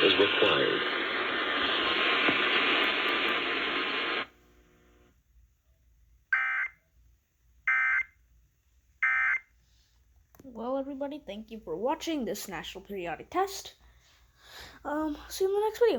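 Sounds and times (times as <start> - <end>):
radio hiss: 0.0 - 5.1.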